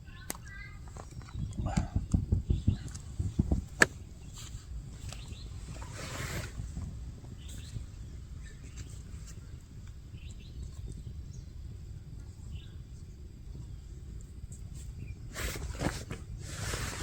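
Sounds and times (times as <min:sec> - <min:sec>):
wind rumble on microphone: 0:00.0 - 0:17.0
bird chirps: 0:07.3 - 0:09.1, 0:10.1 - 0:11.6.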